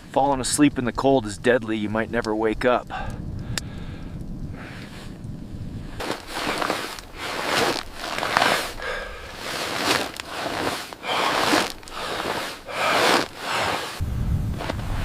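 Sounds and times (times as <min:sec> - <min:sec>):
person breathing heavily: 0:02.8 - 0:05.2, 0:05.8 - 0:14.0
low rumble: 0:14.0 - 0:15.0.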